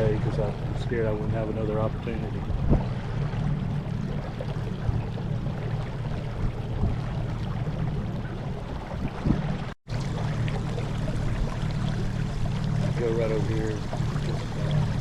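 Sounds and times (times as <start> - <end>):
water noise: 0.0 - 15.0
electric boat motor humming: 9.6 - 15.0.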